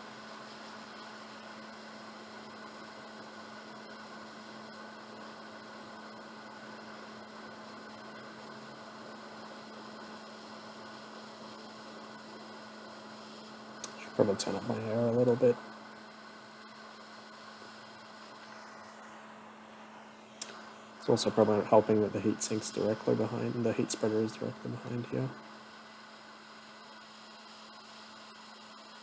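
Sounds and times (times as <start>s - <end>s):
hot air station blowing hiss: 13.8s - 15.6s, 18.4s - 25.4s.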